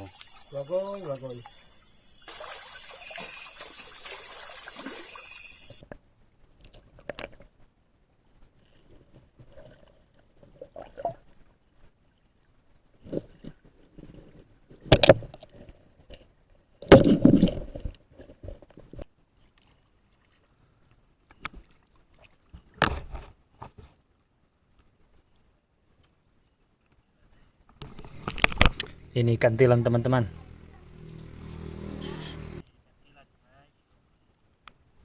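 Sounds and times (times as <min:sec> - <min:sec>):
water sloshing and splashing: 0:02.2 - 0:05.8, 0:21.4 - 0:23.3.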